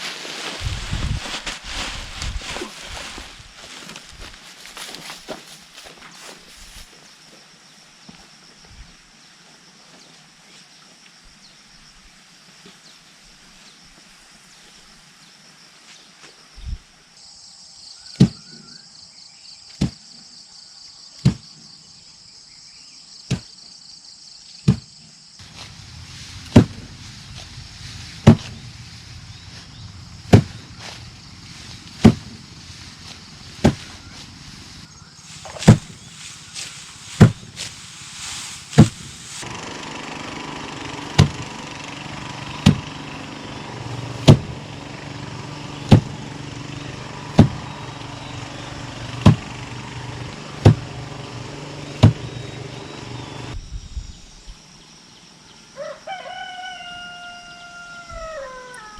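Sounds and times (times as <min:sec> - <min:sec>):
insects chirring: 0:00.0 - 0:58.9
steady engine-like hum: 0:00.6 - 0:06.9, 0:25.4 - 0:53.6
hand tool striking hard blows: 0:38.7 - 0:52.4.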